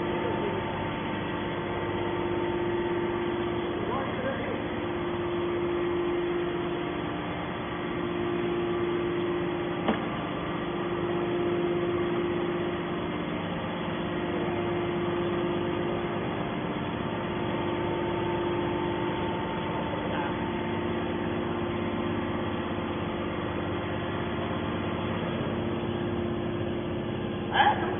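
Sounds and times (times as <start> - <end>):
electric motor and pump humming: 0.0 - 27.9.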